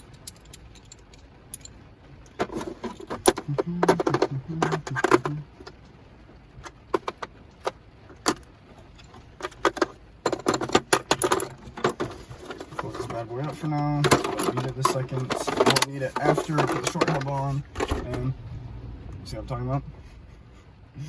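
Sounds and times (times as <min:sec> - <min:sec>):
metal tools clinking: 0:00.0 - 0:05.8, 0:06.6 - 0:18.3.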